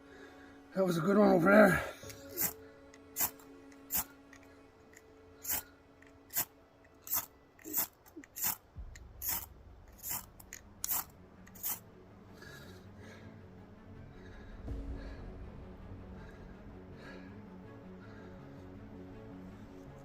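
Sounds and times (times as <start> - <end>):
ferro rod rasping strikes: 7.2 - 12.0.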